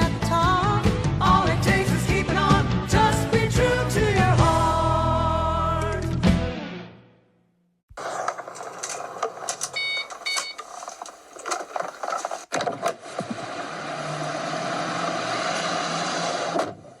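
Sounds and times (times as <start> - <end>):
car engine starting and running: 7.9 - 17.0
clicks and knocks: 8.0 - 13.0
short beeps: 9.7 - 10.6.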